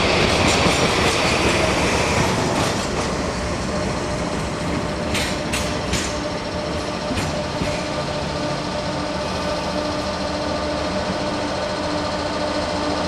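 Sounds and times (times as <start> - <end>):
train rumbling on rails: 0.0 - 13.0
sharp clicks of rails: 5.0 - 6.3.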